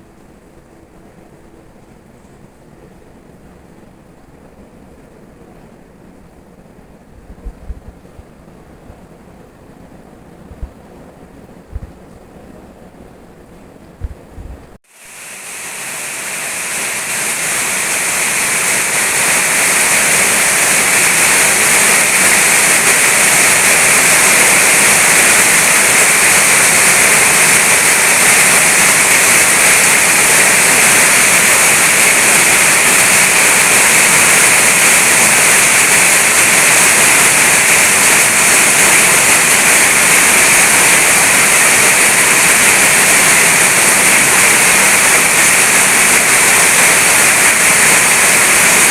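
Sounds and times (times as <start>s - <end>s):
low thump: 14.0s - 14.7s
heavy rain: 14.8s - 48.9s.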